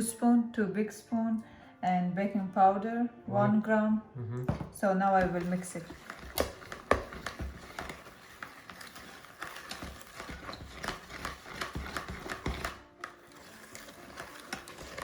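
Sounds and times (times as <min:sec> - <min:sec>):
utensil knocking against bowl: 0:04.5 - 0:08.0.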